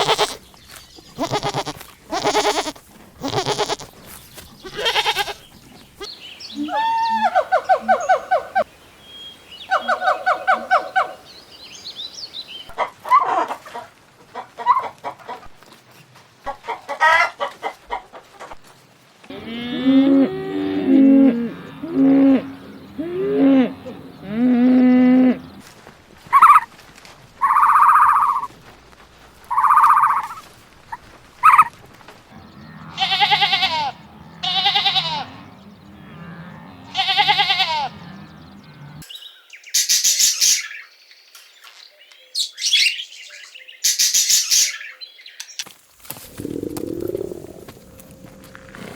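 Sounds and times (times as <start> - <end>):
chickens clucking: 0.0 - 0.4, 12.8 - 15.5, 16.5 - 18.6, 46.2 - 47.8.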